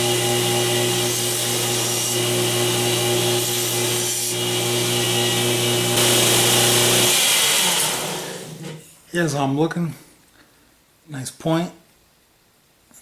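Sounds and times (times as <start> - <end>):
belt grinder motor hum: 0.0 - 8.8.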